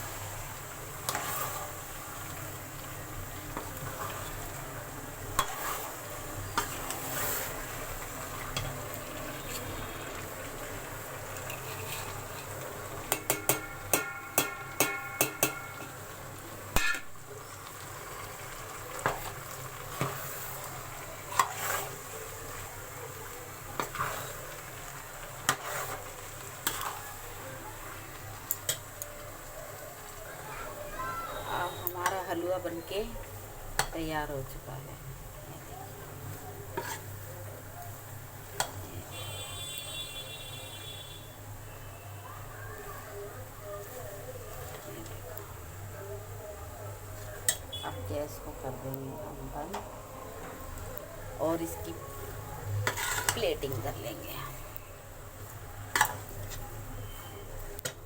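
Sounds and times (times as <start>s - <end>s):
low sizzle: 0.0s - 58.0s
spoon scraping metal pot: 1.0s - 1.7s, 5.4s - 7.7s, 8.5s - 10.0s, 11.3s - 16.0s, 21.3s - 22.0s, 36.7s - 37.1s, 52.8s - 54.2s
ringing metallic taps: 13.1s - 16.0s
spoon knocking on pot: 13.1s - 16.0s.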